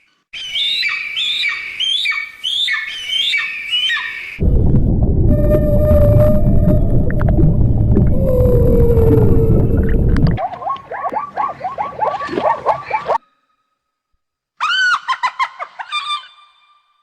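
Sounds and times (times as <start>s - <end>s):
loud low rough animal call: 4.4s - 10.4s.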